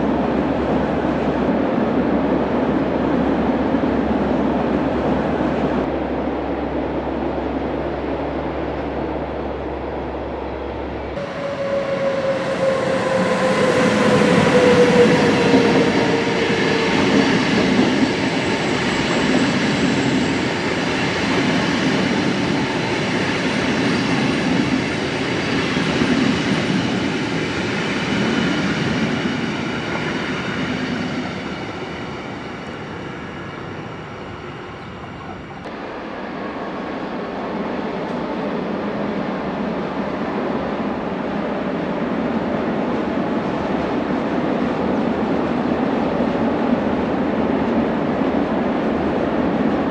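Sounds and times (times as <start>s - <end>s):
train wheels rumbling on rails: 0.0s - 49.9s.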